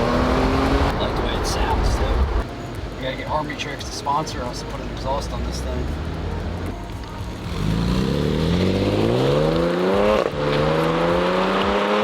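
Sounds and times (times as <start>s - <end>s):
car engine accelerating hard: 0.0s - 2.4s, 7.4s - 12.0s.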